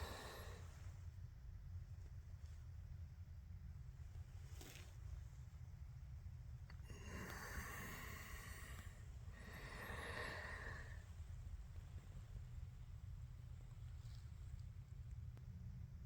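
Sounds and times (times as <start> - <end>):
person breathing close to microphone: 0.0 - 0.9, 6.8 - 12.4
steady low rumble: 0.0 - 16.0.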